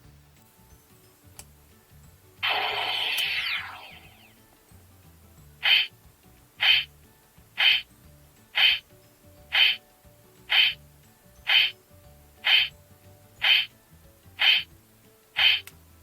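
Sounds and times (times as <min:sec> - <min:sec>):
electronic chirp sound effect: 0:02.4 - 0:04.4, 0:05.6 - 0:05.9, 0:11.5 - 0:11.7, 0:12.5 - 0:12.7, 0:13.4 - 0:13.7, 0:14.4 - 0:14.7.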